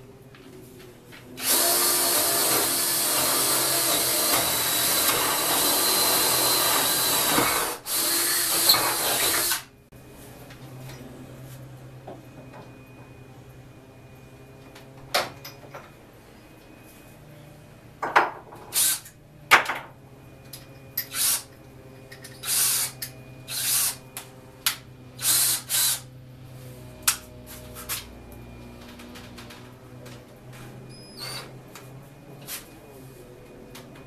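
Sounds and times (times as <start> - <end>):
power drill drilling plywood: 1.4 - 9.7, 25.2 - 26.1.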